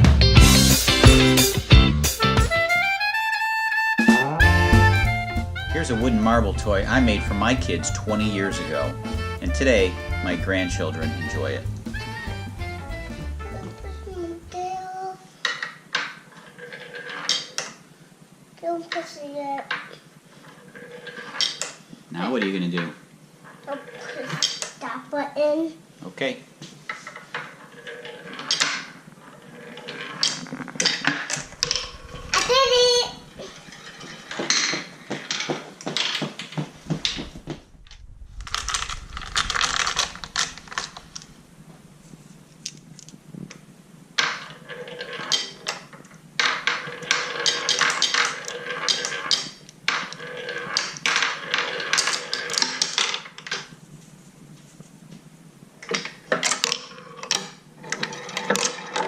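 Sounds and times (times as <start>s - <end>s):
marbles rolling on wooden tracks: 5.8s - 13.5s, 15.4s - 17.8s, 19.6s - 24.9s, 26.9s - 37.6s, 38.3s - 41.3s, 44.2s - 53.8s, 55.8s - 59.0s.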